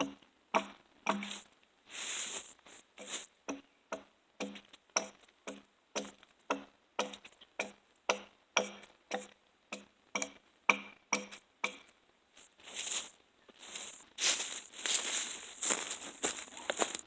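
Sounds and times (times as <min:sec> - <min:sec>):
axe striking a log: 0:00.0 - 0:01.4, 0:03.5 - 0:11.9.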